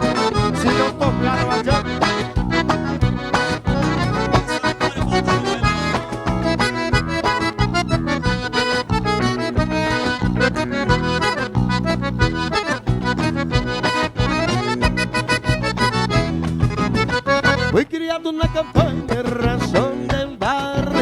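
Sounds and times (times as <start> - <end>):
steady beat: 0.0 - 17.8
bass: 0.0 - 17.9, 18.5 - 21.0
accordion: 0.0 - 21.0.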